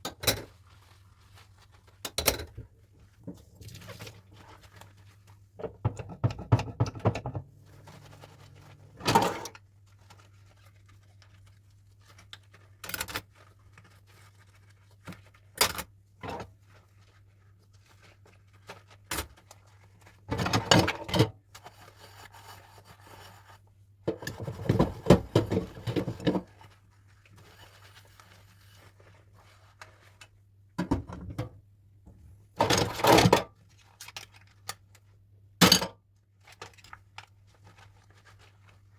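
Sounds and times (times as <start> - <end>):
low steady hum: 0.3 - 11.6.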